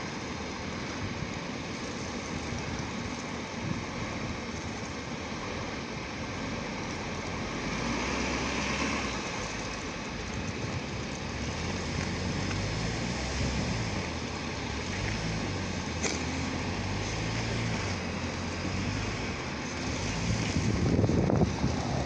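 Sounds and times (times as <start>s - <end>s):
low engine hum: 0.0s - 22.0s
snowstorm wind blowing: 10.0s - 22.0s.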